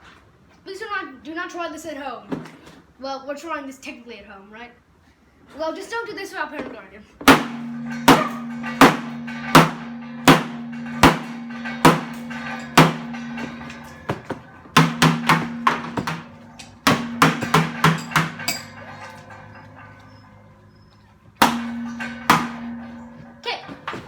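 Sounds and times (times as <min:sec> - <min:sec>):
hammer clanging on steel tank: 0:07.2 - 0:20.4, 0:21.4 - 0:24.0.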